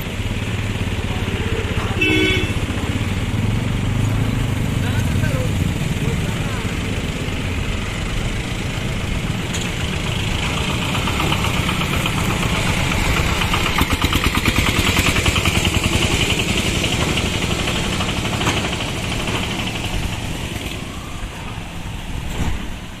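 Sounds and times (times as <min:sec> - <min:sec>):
wheel clatter over rail joints: 0:03.9 - 0:23.0
train rumble and hiss: 0:05.0 - 0:23.0.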